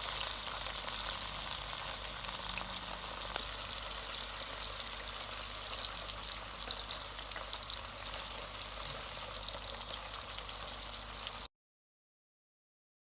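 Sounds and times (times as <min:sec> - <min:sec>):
beef sizzling in a pan: 0:00.0 - 0:11.5.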